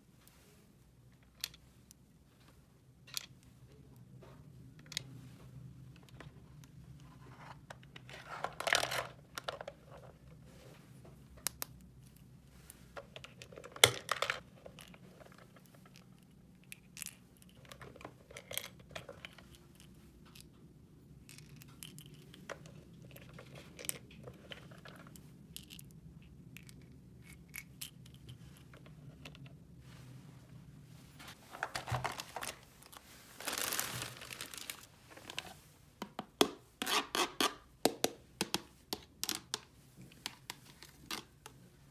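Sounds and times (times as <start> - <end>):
loud plastic rustles: 31.3 - 35.5
plastic packaging crinkling and tearing: 31.5 - 35.5.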